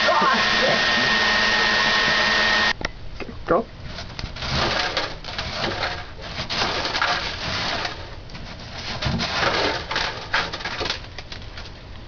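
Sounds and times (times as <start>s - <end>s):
ice crunching and scraping: 3.9s - 11.1s.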